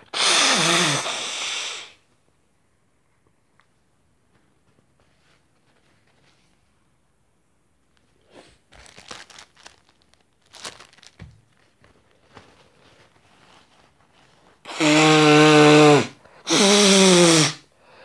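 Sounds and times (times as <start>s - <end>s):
honking nose blow: 0.0s - 2.0s, 14.6s - 17.7s
tissue paper crinkling: 8.4s - 14.6s.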